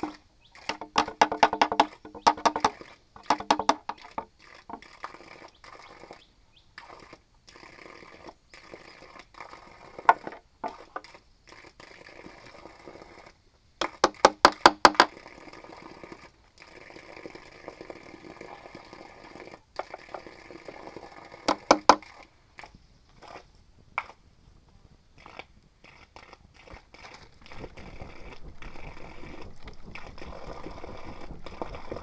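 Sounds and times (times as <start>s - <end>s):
sharp knocks on bamboo: 0.0s - 4.3s, 13.8s - 15.1s, 21.5s - 22.0s
scraping and rustling bamboo: 0.0s - 5.0s.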